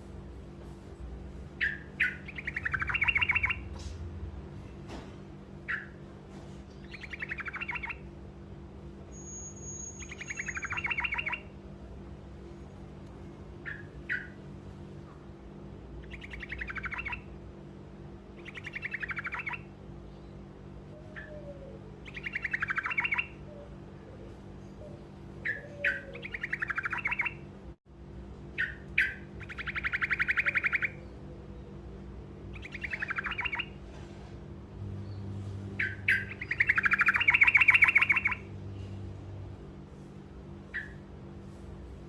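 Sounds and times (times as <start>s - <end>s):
steady low hum: 0.0s - 42.0s
bird singing rolling trills: 1.5s - 3.7s, 5.6s - 6.0s, 6.7s - 8.2s, 9.1s - 11.7s, 13.5s - 14.6s, 15.9s - 17.7s, 18.3s - 27.5s, 28.5s - 33.8s, 34.9s - 38.9s, 40.6s - 41.1s
bird chirps: 1.6s - 3.8s, 5.6s - 6.0s, 6.7s - 8.1s, 9.1s - 11.5s, 13.6s - 14.4s, 16.0s - 17.3s, 18.4s - 23.8s, 24.6s - 27.4s, 28.6s - 31.8s, 32.5s - 33.8s, 35.0s - 38.9s, 40.7s - 41.0s.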